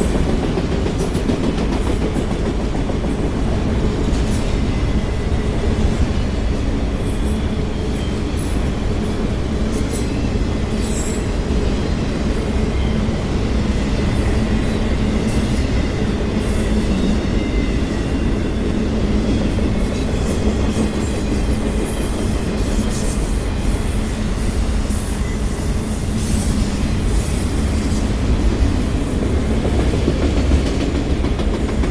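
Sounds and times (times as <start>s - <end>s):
freight train wheels rumbling: 0.0s - 31.9s
high wheel squeal: 13.9s - 29.1s.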